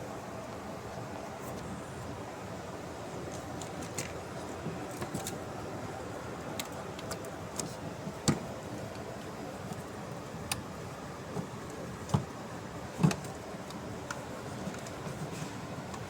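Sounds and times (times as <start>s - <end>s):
steady background hiss: 0.0s - 16.0s.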